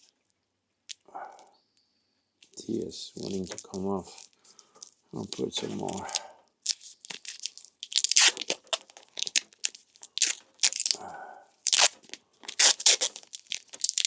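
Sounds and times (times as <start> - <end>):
tape tearing off roll: 5.8 - 11.0, 11.6 - 14.0.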